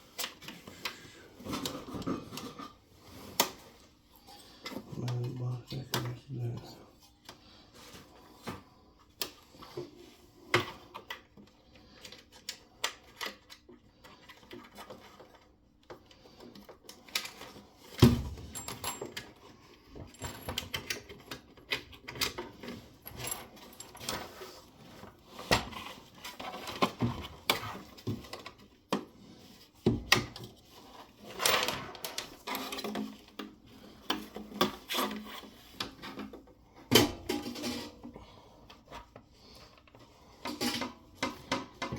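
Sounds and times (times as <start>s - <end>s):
tools and metal parts clattering: 16.5s - 38.2s, 39.9s - 41.9s.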